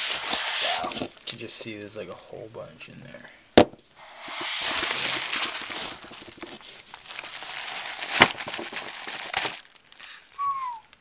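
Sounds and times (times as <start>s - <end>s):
plastic packaging crinkling: 4.2s - 11.0s.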